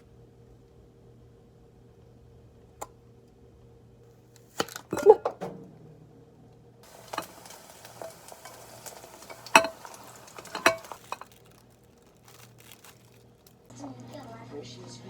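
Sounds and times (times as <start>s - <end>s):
utensil stirring and scraping in a pan: 6.8s - 11.4s.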